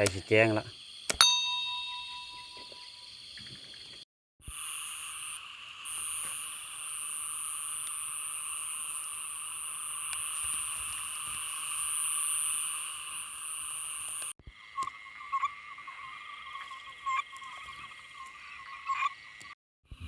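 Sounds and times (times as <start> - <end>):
insects and frogs chorus: 0.0 - 1.1, 1.7 - 19.5
metallic ring: 1.2 - 3.0.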